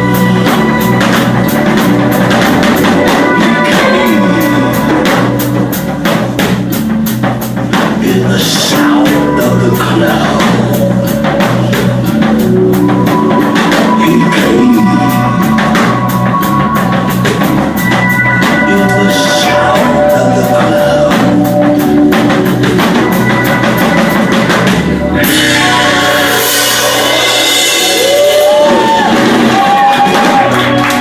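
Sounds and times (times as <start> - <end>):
drum kit beat: 0.0 - 31.0
rock band music: 0.0 - 31.0
person singing: 2.3 - 5.9, 7.9 - 16.8, 18.0 - 23.9, 25.0 - 31.0.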